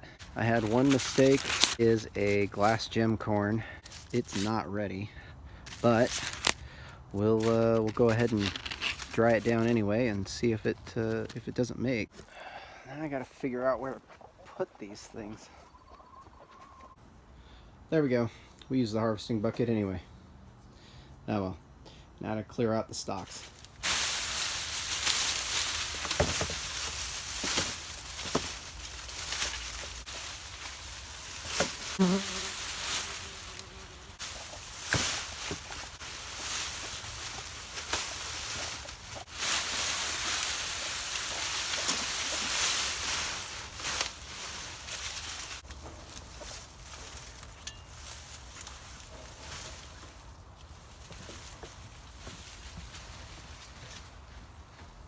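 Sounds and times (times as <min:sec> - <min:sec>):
dry corn stalks rustling and snapping: 0:00.0 - 0:03.0, 0:03.6 - 0:04.7, 0:05.6 - 0:12.3, 0:23.2 - 0:55.0.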